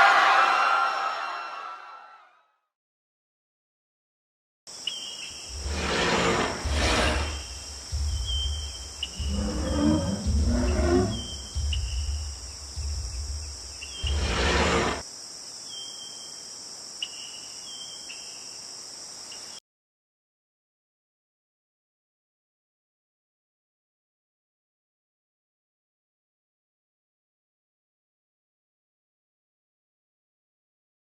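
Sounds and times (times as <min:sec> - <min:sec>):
insect-like chirping: 0:04.7 - 0:19.6
dinosaur roars and growls: 0:05.6 - 0:15.0.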